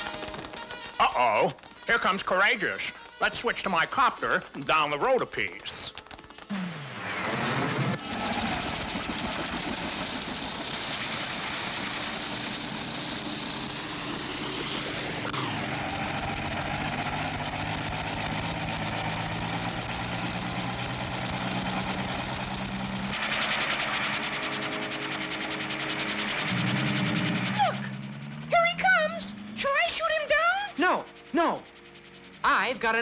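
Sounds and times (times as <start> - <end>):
cartoon engine chugging: 0.0 - 33.0
steady low tones: 21.3 - 33.0.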